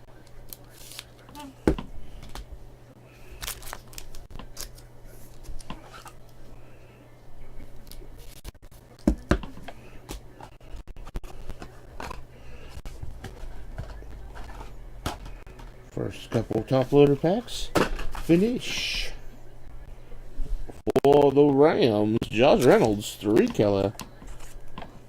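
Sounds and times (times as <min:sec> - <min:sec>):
steady low hum: 0:00.0 - 0:25.0
card wrappers rustling: 0:00.2 - 0:01.5, 0:03.2 - 0:06.3, 0:22.5 - 0:23.6.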